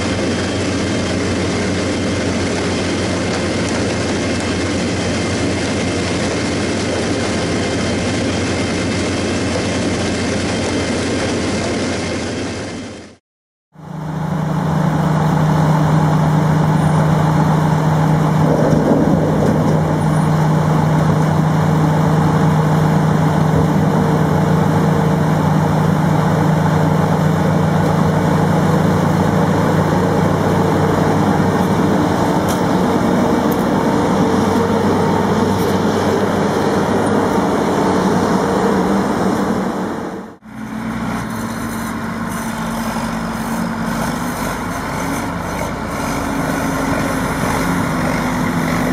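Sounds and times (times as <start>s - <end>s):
heavy diesel engine running: 0.0s - 48.9s
second engine running steadily: 0.0s - 48.9s.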